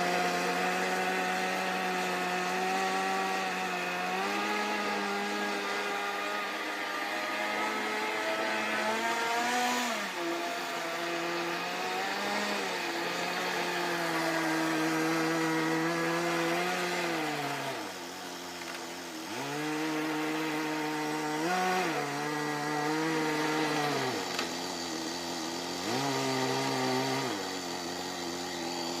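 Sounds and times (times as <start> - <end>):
small model engine buzzing: 0.0 - 29.0.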